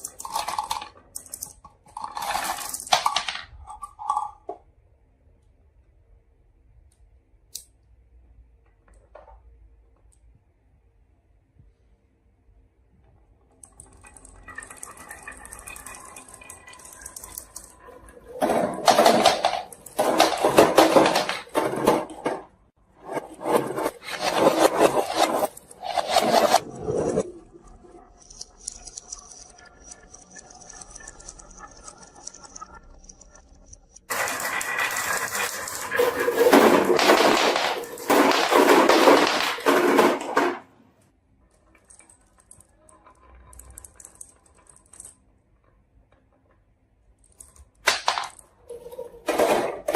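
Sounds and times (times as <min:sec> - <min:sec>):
marbles rattling down wooden run: 0:00.0 - 0:04.6, 0:13.8 - 0:22.4, 0:23.3 - 0:27.2, 0:28.2 - 0:40.6, 0:41.7 - 0:45.2.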